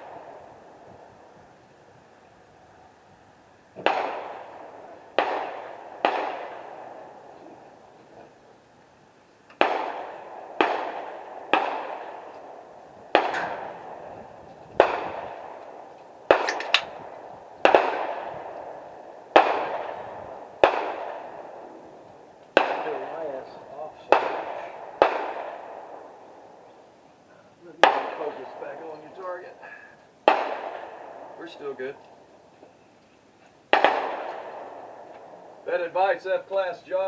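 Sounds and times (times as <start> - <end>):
echoing gunshots: 0.0 - 1.1, 3.8 - 7.9, 9.6 - 26.6, 27.6 - 29.6, 30.2 - 32.0, 33.7 - 36.2.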